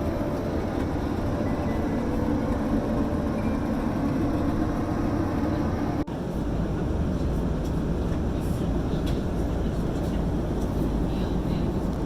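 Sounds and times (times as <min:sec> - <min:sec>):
jet engines and airflow rumble: 0:00.0 - 0:12.0.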